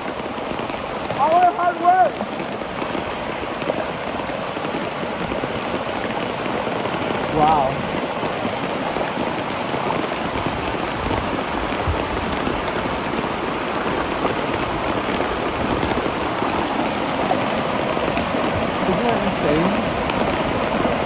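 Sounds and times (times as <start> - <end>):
rushing flood water: 0.0 - 21.0.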